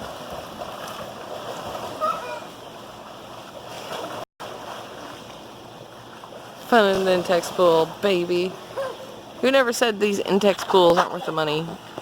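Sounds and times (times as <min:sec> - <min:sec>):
pool water splashing: 0:00.0 - 0:12.0
children playing in water: 0:01.3 - 0:02.9, 0:08.5 - 0:09.6.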